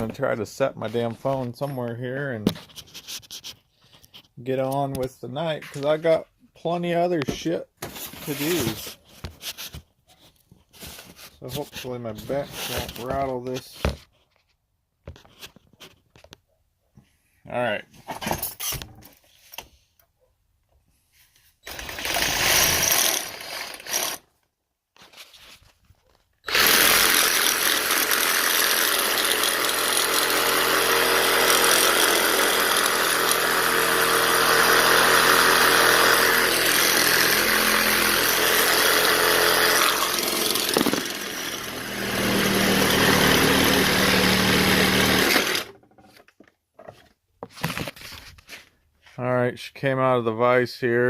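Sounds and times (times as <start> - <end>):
reciprocating saw cutting plastic: 21.6 - 24.3, 26.4 - 45.8.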